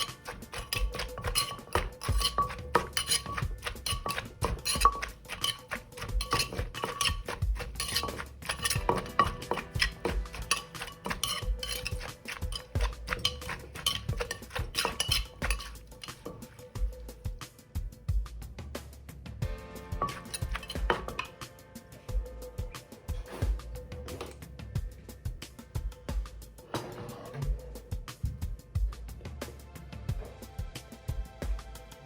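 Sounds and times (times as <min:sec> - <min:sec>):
pestle knocking in a mortar: 0:00.0 - 0:16.6, 0:20.0 - 0:21.4.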